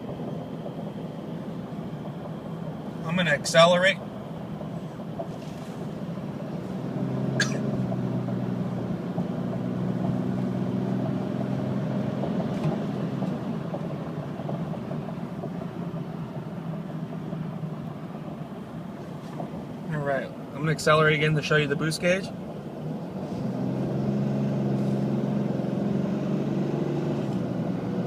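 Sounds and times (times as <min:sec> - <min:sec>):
diesel engine drone accelerating: 0:00.0 - 0:28.0.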